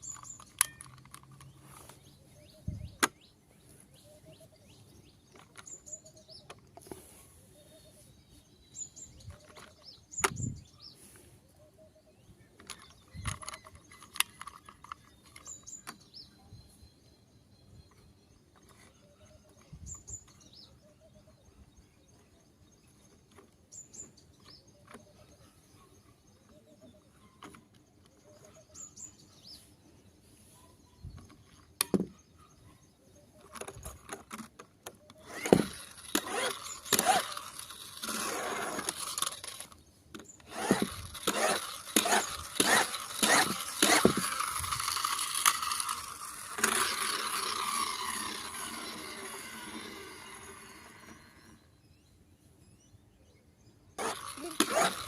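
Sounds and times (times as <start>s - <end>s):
toy car clattering: 0.0s - 2.2s, 5.2s - 7.0s, 9.2s - 10.4s, 12.5s - 16.2s, 17.9s - 20.6s, 33.4s - 51.7s, 54.0s - 55.0s
toy car wheels whirring: 0.0s - 2.2s, 9.1s - 10.4s, 12.6s - 16.1s, 17.9s - 20.6s, 33.4s - 51.8s, 54.0s - 55.0s.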